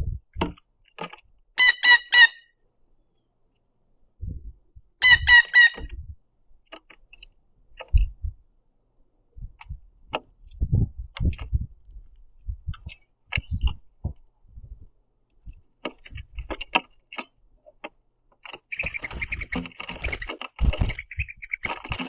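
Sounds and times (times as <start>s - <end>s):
birds pecking on wood: 6.6s - 8.2s, 9.6s - 22.0s.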